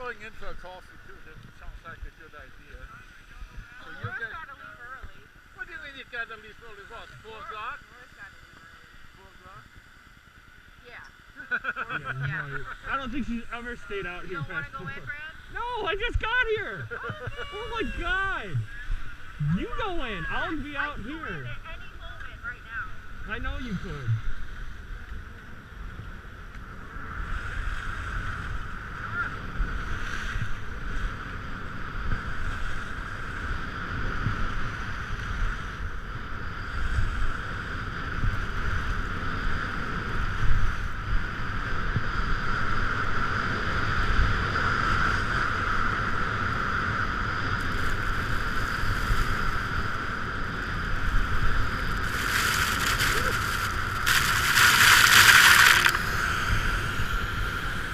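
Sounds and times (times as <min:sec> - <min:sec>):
wind rushing over microphone: 0:12.5 - 0:57.9.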